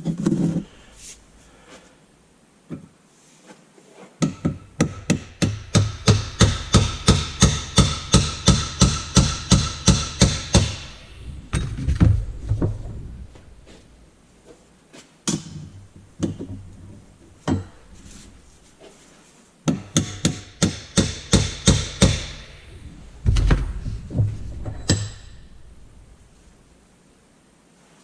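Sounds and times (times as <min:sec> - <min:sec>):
hammer striking metal: 0:04.2 - 0:11.7, 0:19.7 - 0:22.6, 0:24.7 - 0:25.8.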